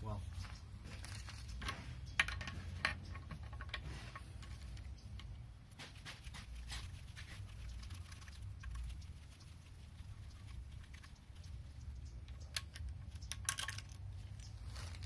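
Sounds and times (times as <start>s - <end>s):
metal parts and tools clicking: 12.2s - 15.0s.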